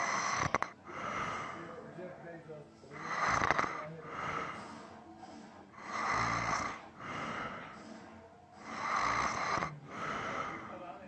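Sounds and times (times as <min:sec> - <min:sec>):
person snoring: 0:00.0 - 0:01.7, 0:03.0 - 0:04.9, 0:05.8 - 0:07.8, 0:08.6 - 0:10.8
soft breath: 0:00.0 - 0:02.2, 0:02.8 - 0:11.0.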